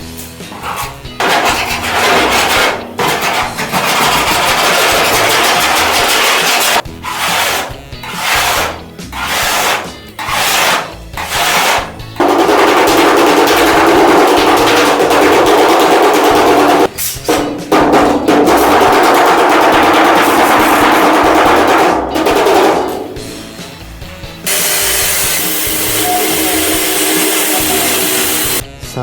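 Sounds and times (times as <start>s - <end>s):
rubbing strokes: 0.5s - 12.0s
power tool on car body metal: 24.5s - 28.6s.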